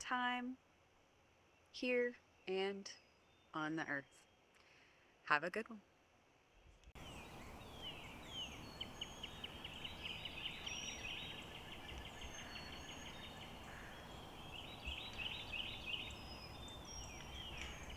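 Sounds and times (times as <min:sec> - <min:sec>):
birds chirping and trilling: 0:07.0 - 0:17.9
steady background hiss: 0:07.0 - 0:17.9.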